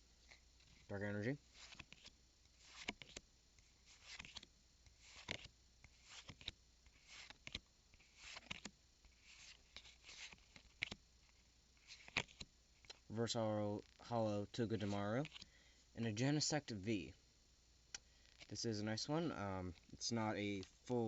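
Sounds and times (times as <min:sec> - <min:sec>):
trading cards sliding and flipping: 0:00.3 - 0:13.0, 0:13.8 - 0:15.5.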